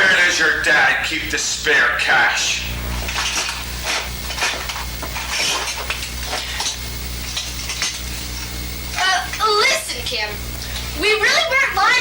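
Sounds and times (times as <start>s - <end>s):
steady low hum: 0.0s - 12.0s
objects clinking and rattling: 3.0s - 9.5s.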